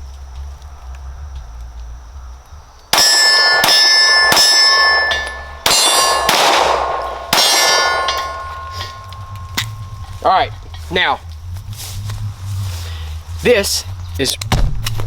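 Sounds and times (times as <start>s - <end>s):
pistol shots: 2.9s - 9.1s
steel target clanging: 2.9s - 11.1s.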